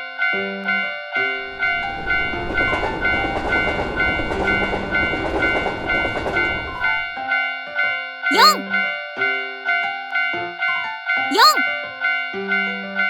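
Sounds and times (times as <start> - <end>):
train passing with rumbling rattle: 1.4 - 7.1.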